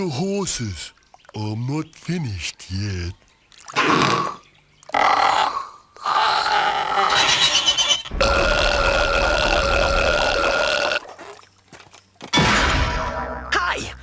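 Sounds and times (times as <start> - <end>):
cartoon character burping: 8.2 - 11.1.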